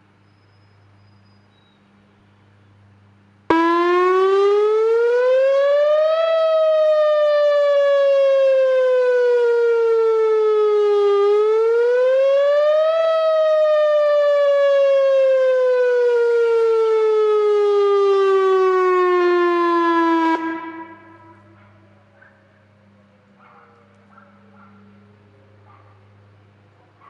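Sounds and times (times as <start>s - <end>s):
warning siren wailing: 3.5s - 22.0s.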